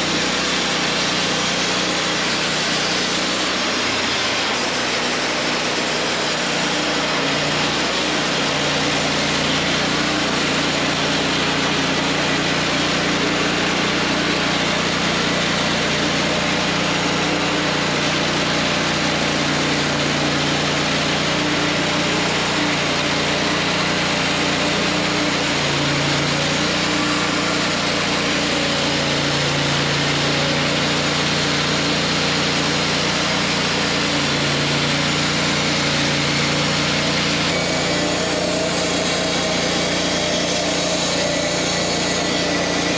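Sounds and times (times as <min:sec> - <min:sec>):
band sawmill cutting log: 0:00.0 - 0:42.9.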